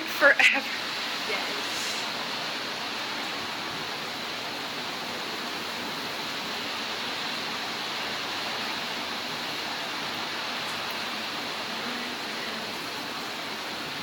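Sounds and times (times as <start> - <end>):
rain hissing: 0.0 - 14.0.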